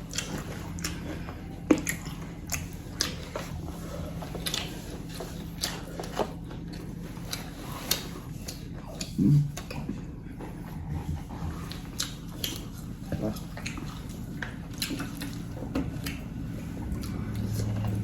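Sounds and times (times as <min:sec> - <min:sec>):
chewing and biting chicken: 0:00.0 - 0:18.0
low hum: 0:00.0 - 0:18.0
wet mouth clicks and smacks: 0:13.4 - 0:16.3.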